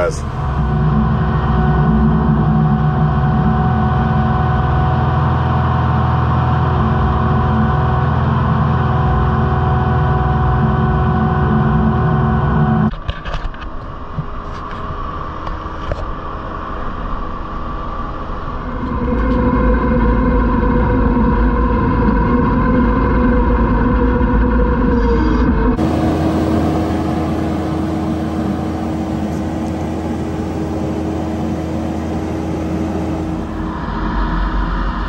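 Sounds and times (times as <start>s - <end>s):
diesel engine revving: 0.0s - 12.8s, 25.5s - 35.0s.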